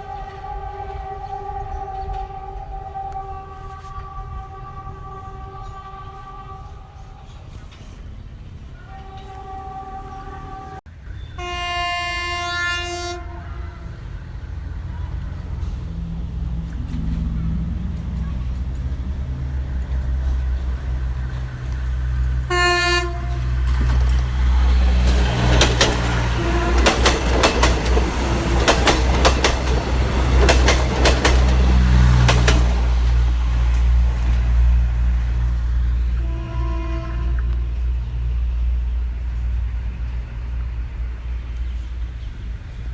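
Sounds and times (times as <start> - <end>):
train horn: 0.0 - 8.0, 8.7 - 14.2, 17.2 - 35.1, 35.8 - 38.8
diesel train rumbling: 0.0 - 42.9
train wheels clacking over rail joints: 15.2 - 35.2.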